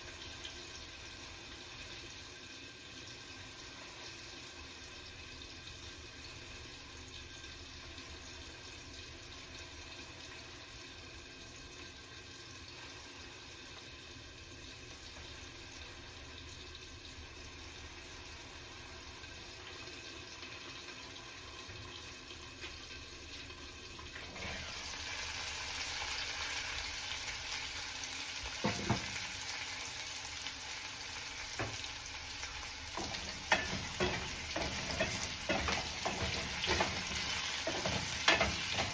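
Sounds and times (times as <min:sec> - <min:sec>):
faint steady hiss: 0:00.0 - 0:38.9
potatoes sizzling in oil: 0:00.0 - 0:38.9
utensil knocking on pan: 0:28.6 - 0:29.1, 0:31.6 - 0:31.9, 0:33.0 - 0:38.9.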